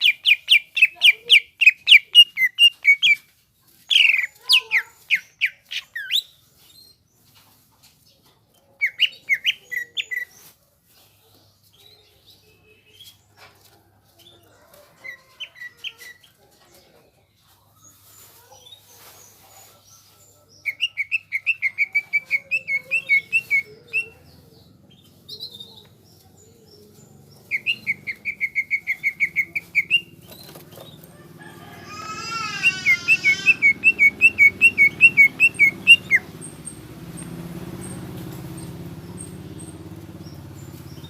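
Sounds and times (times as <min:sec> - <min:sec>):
warbled bird phrase: 0:31.7 - 0:36.4
bird chattering loudly: 0:32.0 - 0:36.3.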